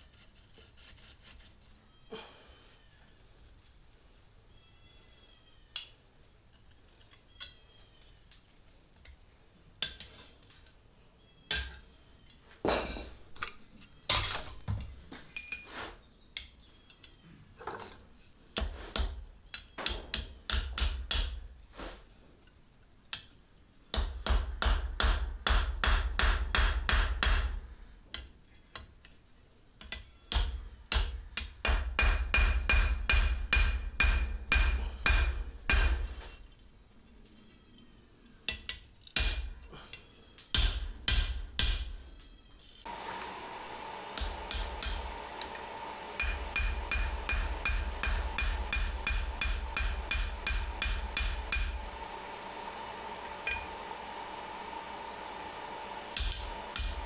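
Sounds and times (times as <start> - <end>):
hammer striking steel on anvil: 18.6 - 21.5, 23.9 - 28.9, 29.8 - 36.2, 38.5 - 42.0, 44.2 - 51.9, 53.4 - 53.8, 56.2 - 57.0
anvil ringing: 32.4 - 36.2, 44.2 - 45.6, 46.2 - 51.8, 53.4 - 53.7, 56.2 - 57.0.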